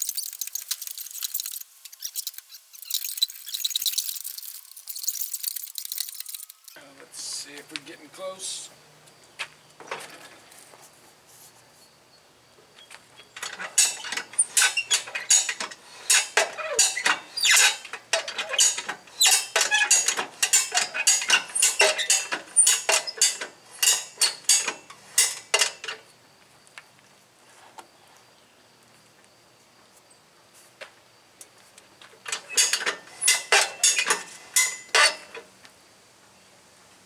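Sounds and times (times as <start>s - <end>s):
jack ratcheting: 0.0s - 6.8s, 13.4s - 25.8s, 32.4s - 35.2s.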